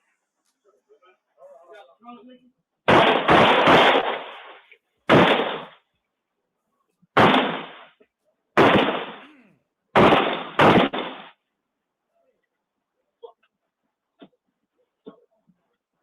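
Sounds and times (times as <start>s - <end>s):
gunshots: 2.9s - 5.8s, 7.2s - 8.0s, 8.6s - 9.3s, 10.0s - 11.4s.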